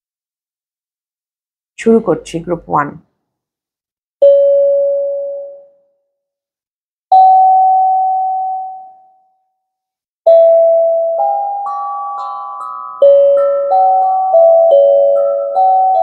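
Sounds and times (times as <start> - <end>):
bell-like percussion notes: 10.3 - 16.0.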